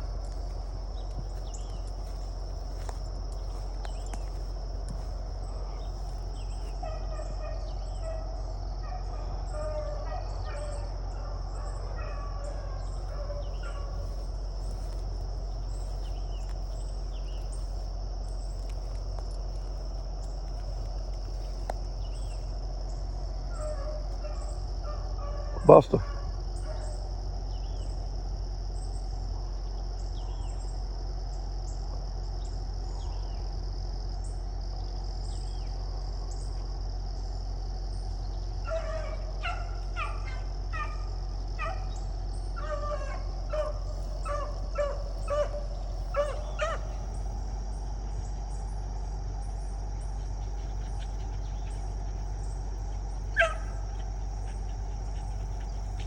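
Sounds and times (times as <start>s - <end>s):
distant hounds baying: 0.0s - 56.0s
high insect drone: 0.0s - 56.0s.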